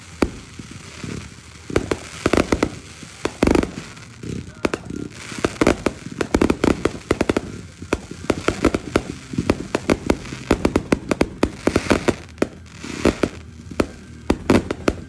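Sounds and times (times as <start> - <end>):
fireworks bangs and pops: 0.0 - 15.0.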